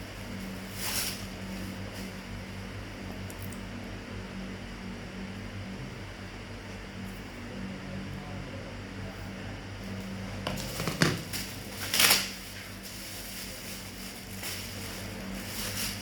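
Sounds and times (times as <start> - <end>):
steady low hum: 0.0 - 16.0
wrapping crinkling: 10.6 - 16.0.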